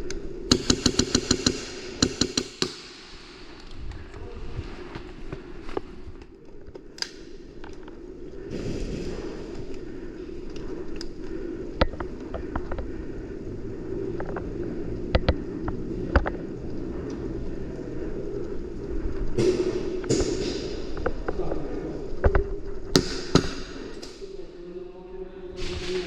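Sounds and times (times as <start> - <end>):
low rushing noise: 7.0 - 26.0.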